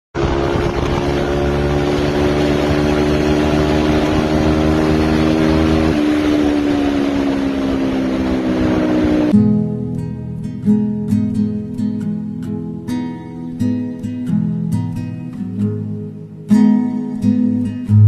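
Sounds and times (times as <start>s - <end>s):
engine running: 0.1s - 9.8s
loud rushing noise: 0.2s - 9.4s.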